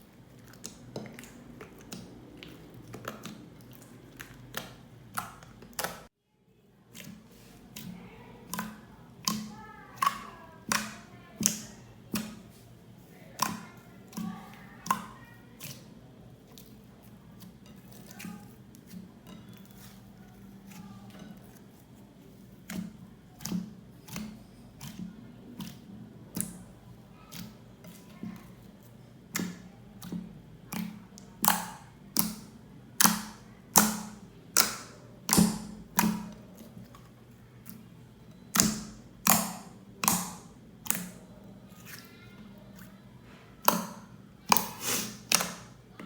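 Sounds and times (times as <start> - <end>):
slime clicking and popping: 0.4 - 6.1, 30.7 - 36.4, 38.5 - 41.2, 43.6 - 45.7.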